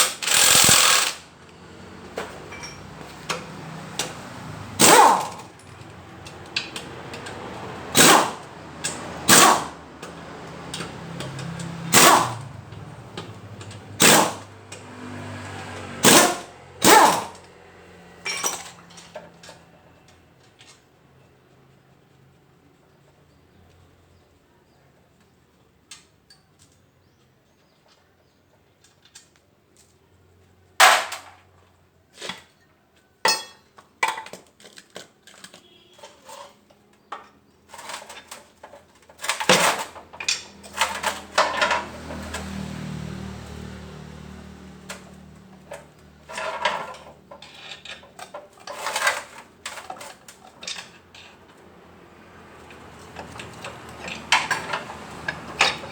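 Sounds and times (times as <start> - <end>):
metal parts clanking: 0.0 - 1.2, 2.1 - 3.4, 18.2 - 19.6, 37.6 - 42.5, 45.6 - 51.6, 52.6 - 55.9.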